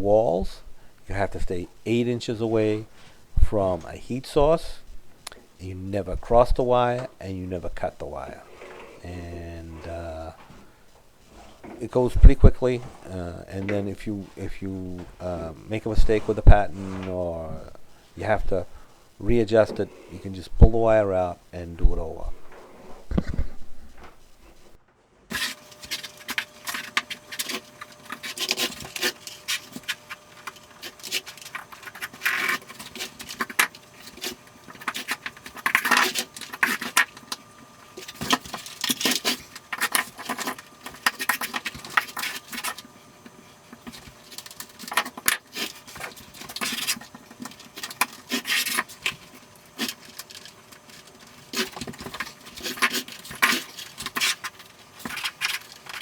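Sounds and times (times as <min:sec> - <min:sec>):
rustling of plastic and wire: 0:22.3 - 0:56.0.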